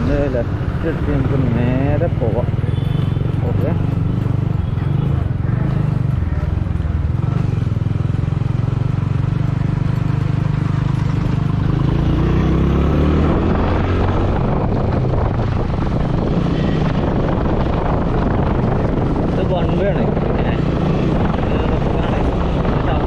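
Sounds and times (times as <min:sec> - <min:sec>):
motorcycle engine accelerating: 0:00.0 - 0:23.0
wind buffeting microphone: 0:13.3 - 0:23.0.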